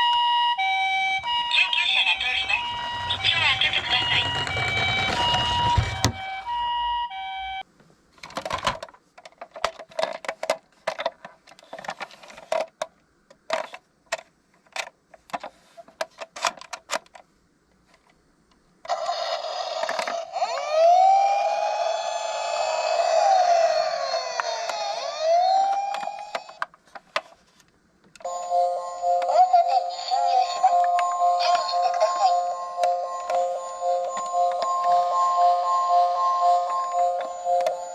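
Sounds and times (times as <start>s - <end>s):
electronic siren rising in pitch: 1.2s - 5.4s, 20.4s - 26.6s
toy cars clicking and clattering: 2.9s - 5.8s, 18.9s - 20.8s.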